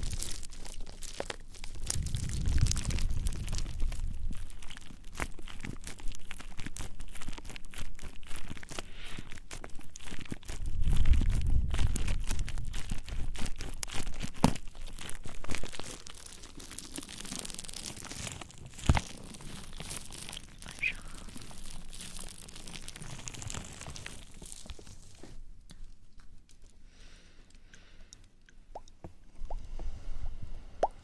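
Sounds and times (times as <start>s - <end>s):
scratchy rubbing on a microphone: 2.0s - 16.1s.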